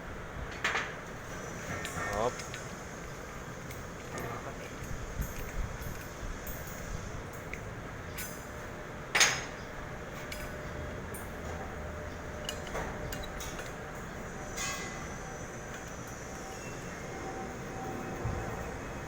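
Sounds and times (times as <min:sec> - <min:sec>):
ringing metal clank: 0:09.1 - 0:11.6, 0:12.4 - 0:15.2
light metal clicks and taps: 0:12.4 - 0:13.8.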